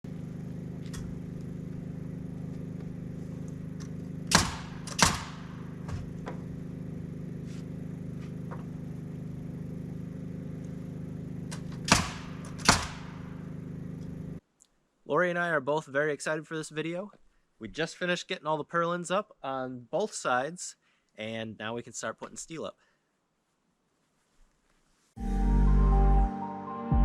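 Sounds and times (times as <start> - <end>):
steady low hum: 0.0 - 14.4
sharp knocks: 4.3 - 6.4, 11.5 - 13.3.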